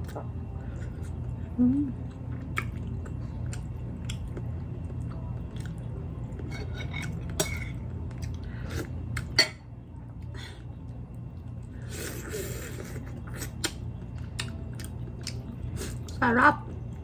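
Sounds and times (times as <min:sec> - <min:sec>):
steady low hum: 0:00.0 - 0:17.0
person chewing: 0:02.1 - 0:09.4, 0:11.4 - 0:16.2.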